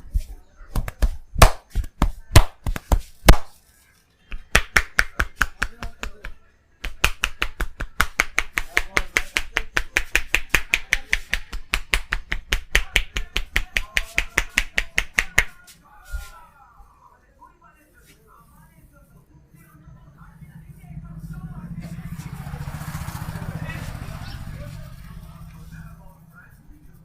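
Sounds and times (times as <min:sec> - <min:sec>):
hands chopping on head: 0:00.2 - 0:03.6, 0:04.3 - 0:15.6.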